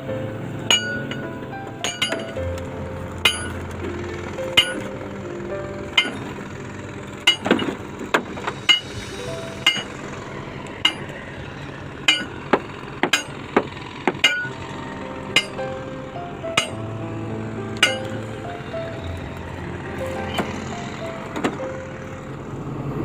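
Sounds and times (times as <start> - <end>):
steady low hum: 0.0 - 23.0
hammer blows on steel: 7.2 - 14.6, 17.8 - 19.1.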